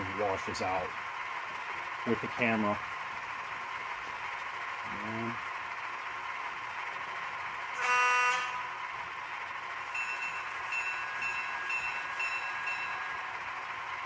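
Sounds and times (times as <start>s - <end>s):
diesel engine running: 0.0s - 14.0s
locomotive horn blast: 7.7s - 8.8s
locomotive bell ringing: 7.8s - 8.8s, 9.7s - 14.0s.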